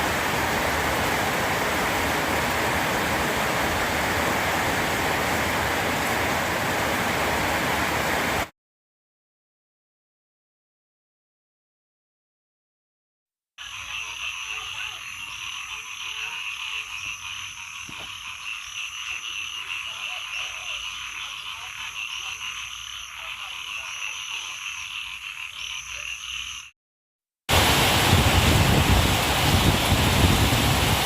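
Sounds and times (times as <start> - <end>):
heavy rain: 0.0 - 8.5, 27.5 - 31.0
chorus of frogs calling: 13.6 - 26.7
higher frog call: 13.6 - 26.7.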